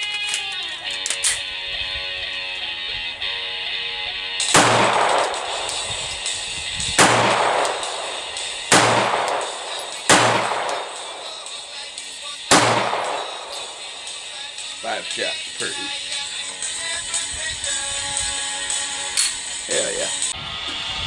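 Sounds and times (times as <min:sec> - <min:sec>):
background music: 0:00.0 - 0:20.4
gunshots with echo: 0:04.4 - 0:14.6.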